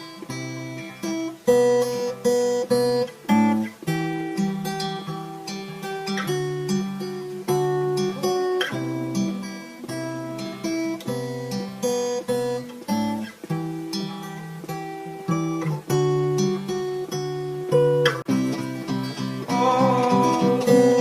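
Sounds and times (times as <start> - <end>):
acoustic guitar chords: 0.0 - 21.0.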